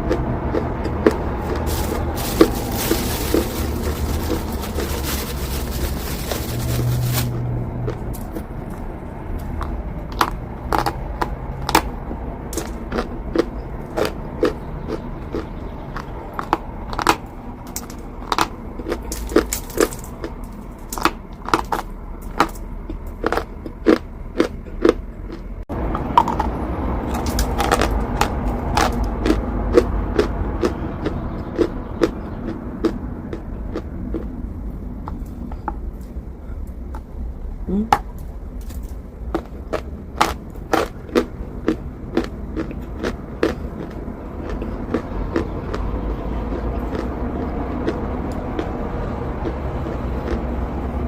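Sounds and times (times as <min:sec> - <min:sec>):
low rumble: 0:00.0 - 0:51.0
chalk being chewed: 0:00.1 - 0:08.8, 0:39.4 - 0:48.8.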